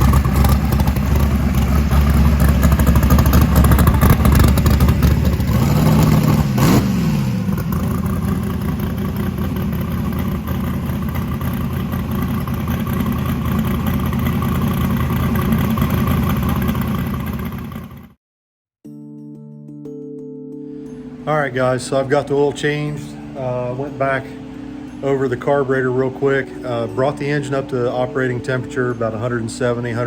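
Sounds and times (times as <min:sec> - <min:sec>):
car engine running: 0:00.0 - 0:18.2.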